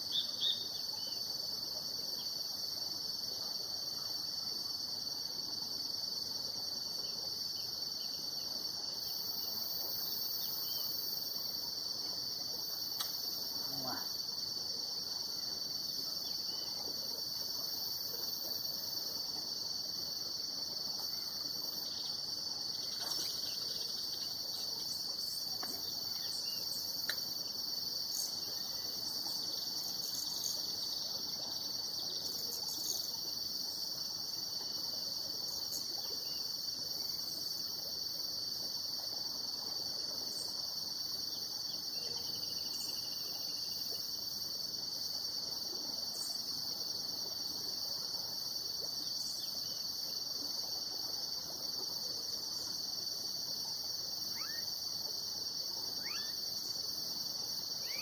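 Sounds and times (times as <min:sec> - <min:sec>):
insects trilling: 0:00.0 - 0:58.0
faint ticks: 0:12.9 - 0:13.2, 0:27.0 - 0:27.3.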